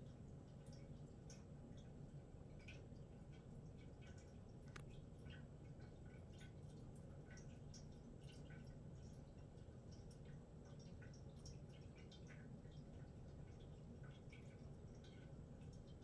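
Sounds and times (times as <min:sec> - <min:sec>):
faint small ticks: 0:04.1 - 0:05.0.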